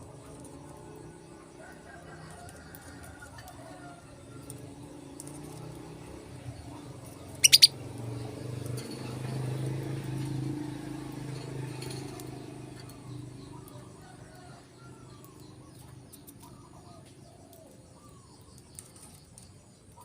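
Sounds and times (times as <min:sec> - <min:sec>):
canary chirps: 0:04.3 - 0:11.8.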